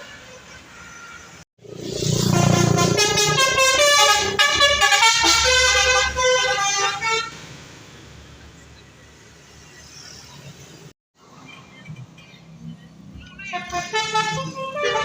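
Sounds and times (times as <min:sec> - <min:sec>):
tuned bus air horns jingle: 0:02.3 - 0:07.3, 0:13.4 - 0:15.0.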